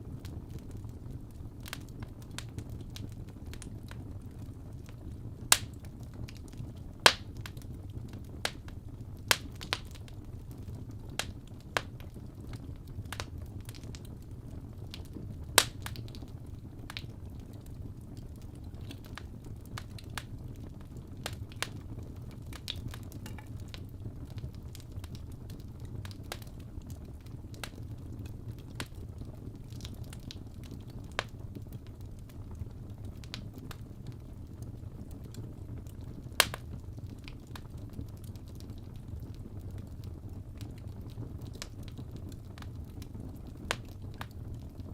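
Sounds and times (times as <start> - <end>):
fire low rumble: 0.0 - 44.9
logs crackling and popping: 0.0 - 44.9.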